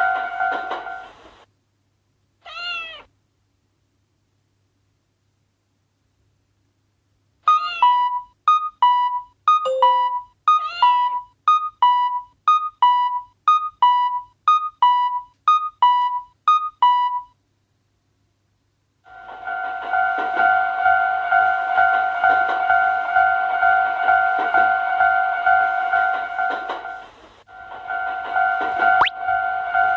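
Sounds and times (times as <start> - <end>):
railroad crossing alarm chiming: 7.5 - 11.2, 19.1 - 29.9.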